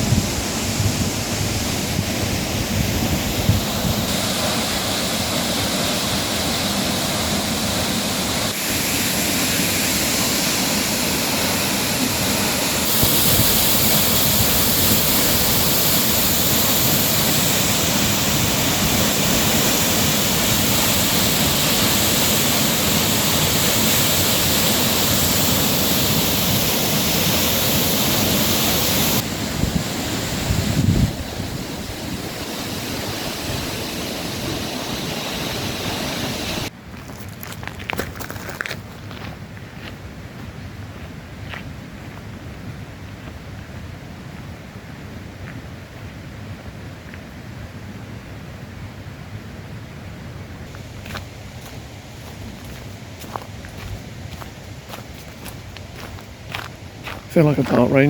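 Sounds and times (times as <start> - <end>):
waterfall roaring: 0.0 - 36.7, 50.0 - 58.0.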